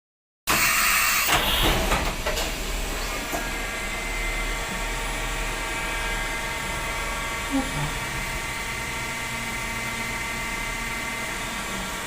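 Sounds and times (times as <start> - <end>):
machine noise with whining tones: 0.5 - 12.0.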